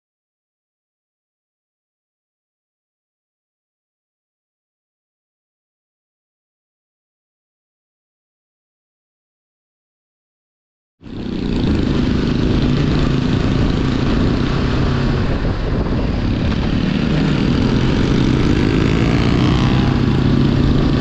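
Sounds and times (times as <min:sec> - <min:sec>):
motorcycle engine running: 0:11.0 - 0:21.0
wind noise on microphone: 0:11.1 - 0:21.0.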